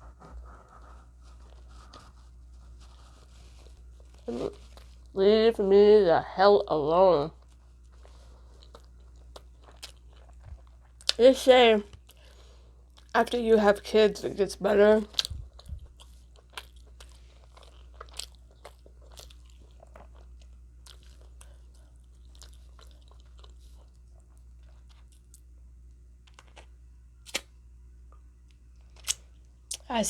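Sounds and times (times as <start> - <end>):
person chewing food: 0.0 - 5.2, 7.3 - 11.2, 11.9 - 13.1, 15.0 - 27.5, 28.5 - 29.9.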